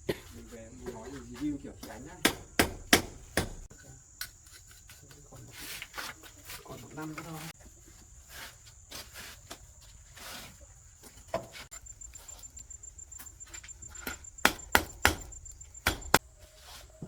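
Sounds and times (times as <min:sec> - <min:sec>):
sharp knocks and taps: 0:01.8 - 0:04.7, 0:13.2 - 0:16.2.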